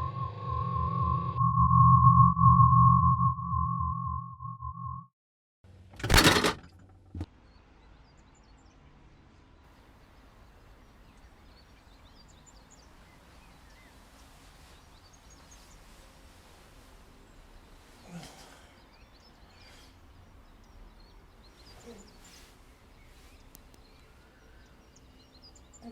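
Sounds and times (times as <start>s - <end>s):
loud burst of noise: 0.0s - 3.6s.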